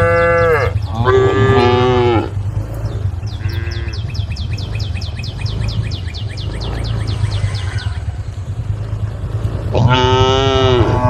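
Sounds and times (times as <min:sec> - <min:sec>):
cow mooing: 0:00.0 - 0:05.8, 0:06.4 - 0:11.0
steady low hum: 0:00.0 - 0:11.0
bird chirping rapidly: 0:02.3 - 0:09.7.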